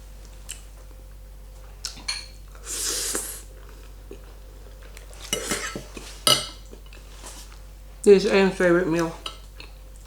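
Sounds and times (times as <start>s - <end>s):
fork scraping a plate: 5.2s - 6.6s.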